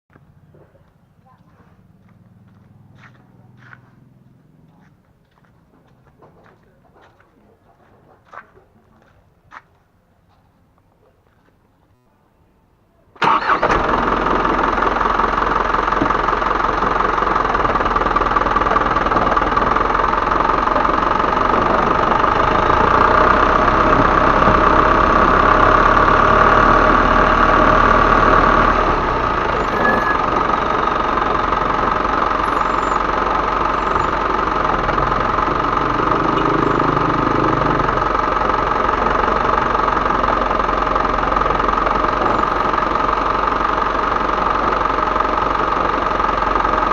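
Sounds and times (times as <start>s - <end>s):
diesel truck engine idling: 0.1s - 9.4s, 13.2s - 46.9s.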